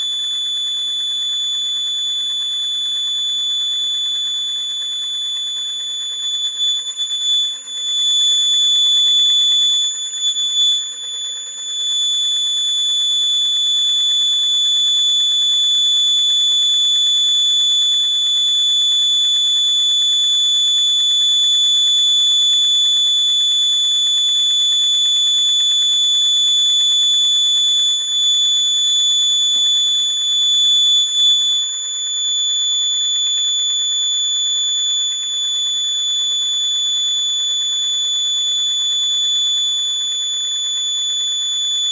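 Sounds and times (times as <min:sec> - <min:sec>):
electronic buzzer tone: 0:05.7 - 0:15.2, 0:25.9 - 0:39.7.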